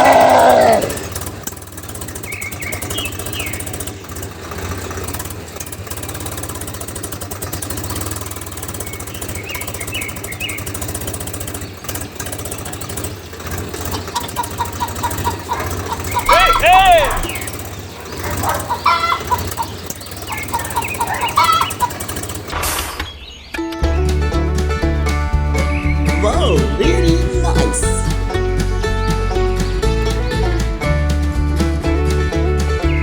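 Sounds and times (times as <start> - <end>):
brief loud call: 16.2 - 17.5.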